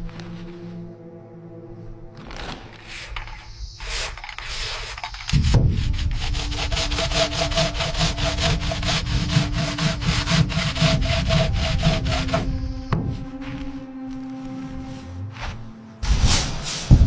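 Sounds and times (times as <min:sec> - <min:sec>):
hand saw cutting wood: 0:04.5 - 0:14.3.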